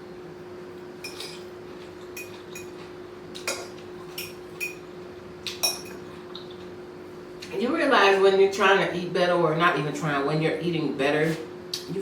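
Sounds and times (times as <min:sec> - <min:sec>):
metal fork clinking on dish: 0:05.6 - 0:06.0.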